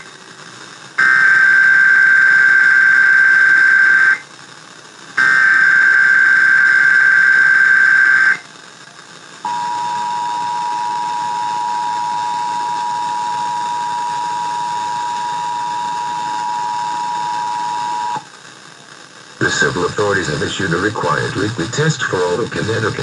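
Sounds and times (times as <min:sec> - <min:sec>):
two-tone attention alarm: 0:01.0 - 0:04.2, 0:05.2 - 0:08.4, 0:09.5 - 0:18.2.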